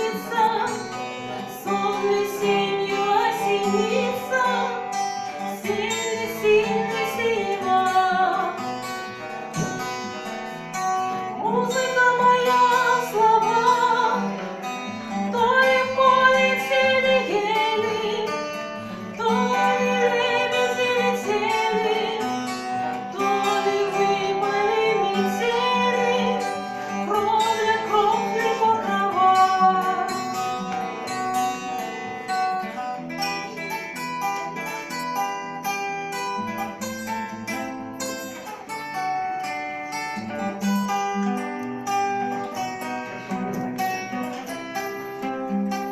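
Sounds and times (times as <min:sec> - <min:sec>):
person singing: 0:00.0 - 0:08.6, 0:15.3 - 0:31.3
plucked acoustic guitar: 0:00.0 - 0:45.9.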